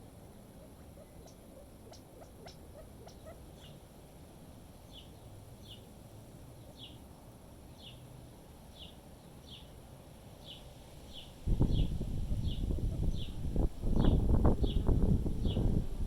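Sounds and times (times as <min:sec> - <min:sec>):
small bird chip calls: 0:00.6 - 0:03.8, 0:10.4 - 0:15.8
wind rumble on microphone: 0:11.1 - 0:16.0.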